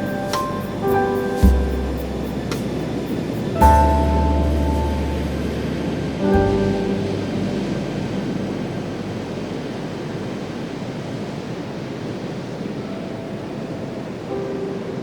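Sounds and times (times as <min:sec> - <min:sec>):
faint music notes: 0:00.0 - 0:11.9
ocean surf washing in: 0:00.0 - 0:15.0.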